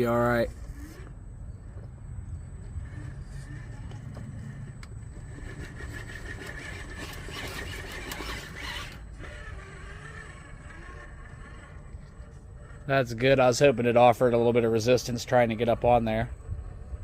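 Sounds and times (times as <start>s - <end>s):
rc car motor whining: 0.0s - 17.0s
scraping and clicking: 2.7s - 12.9s.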